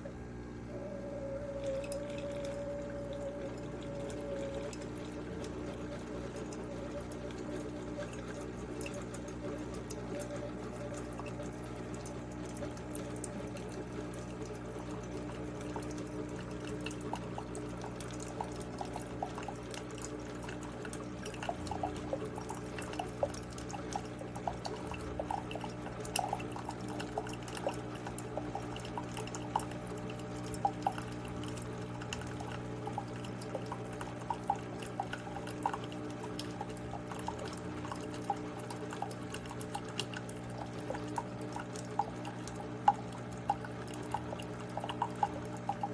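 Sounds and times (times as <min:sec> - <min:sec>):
coffee maker hum: 0:00.0 - 0:45.9
coffee pouring and dripping: 0:00.8 - 0:45.9.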